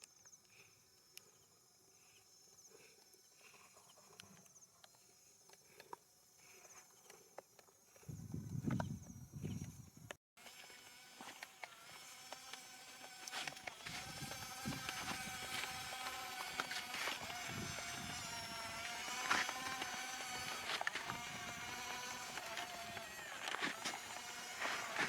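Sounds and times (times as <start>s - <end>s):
electric motor and gearbox whining: 7.7s - 25.0s.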